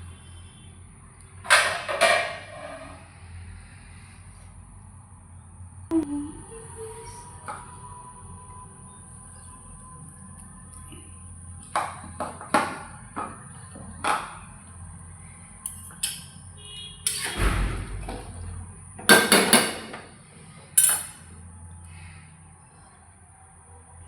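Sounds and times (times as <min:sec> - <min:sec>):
cookware scraping: 0:01.5 - 0:03.1
utensils knocking: 0:20.8 - 0:21.2.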